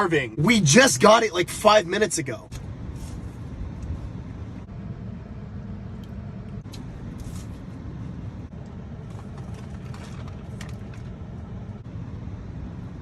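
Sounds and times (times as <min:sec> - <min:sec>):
low background rumble: 0:00.0 - 0:13.0.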